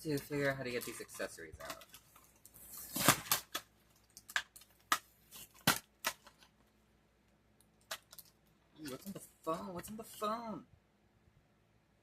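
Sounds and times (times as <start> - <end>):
plastic packaging crinkling and snapping: 0.1 - 6.7, 7.6 - 9.2.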